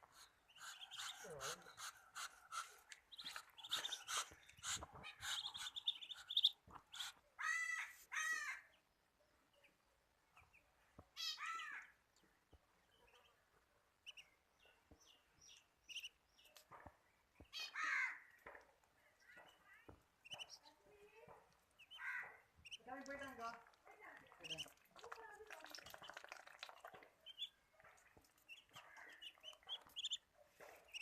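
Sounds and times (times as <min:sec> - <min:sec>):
drawn-out arching bird calls: 0:00.0 - 0:08.6
high bird peeps: 0:00.1 - 0:07.2, 0:28.5 - 0:30.3
faint bird chirps and clicks: 0:02.6 - 0:07.2, 0:14.1 - 0:20.8, 0:25.6 - 0:31.0.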